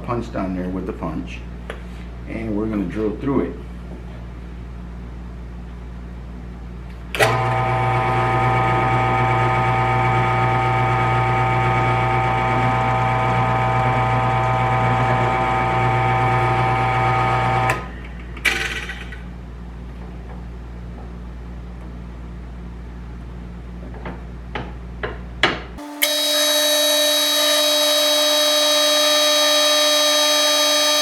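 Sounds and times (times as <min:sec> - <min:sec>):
drill press motor whine: 0:07.2 - 0:17.9, 0:25.8 - 0:31.0.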